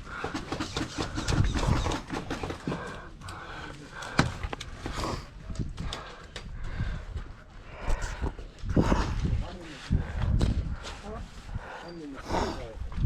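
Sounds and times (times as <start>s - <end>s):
gear knocking about: 0.0s - 3.0s
heavy breathing: 0.0s - 13.0s.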